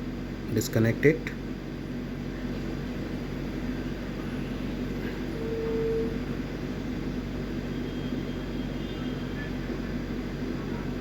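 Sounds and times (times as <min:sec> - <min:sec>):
low rumble and hum: 0:00.0 - 0:11.0
brief steady tone: 0:05.0 - 0:06.4.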